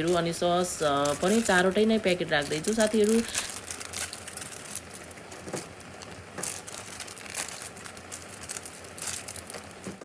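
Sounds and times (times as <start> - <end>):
plastic sachets crinkling: 0.0 - 10.0.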